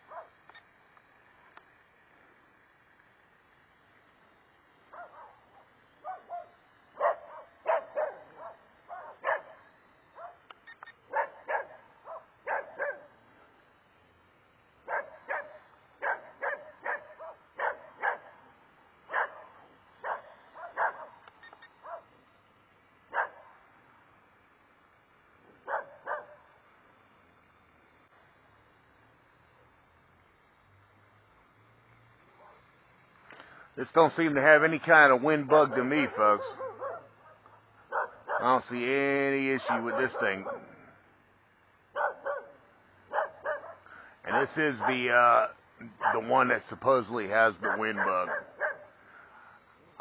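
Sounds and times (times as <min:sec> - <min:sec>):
dog barking: 0:00.0 - 0:00.4, 0:04.9 - 0:05.4, 0:06.0 - 0:10.4, 0:11.1 - 0:13.1, 0:14.9 - 0:18.4, 0:19.1 - 0:21.2, 0:21.8 - 0:22.1, 0:23.1 - 0:23.5, 0:25.6 - 0:26.4, 0:32.4 - 0:32.6, 0:35.7 - 0:38.5, 0:39.6 - 0:40.8, 0:42.0 - 0:43.9, 0:46.0 - 0:46.3, 0:47.6 - 0:48.9.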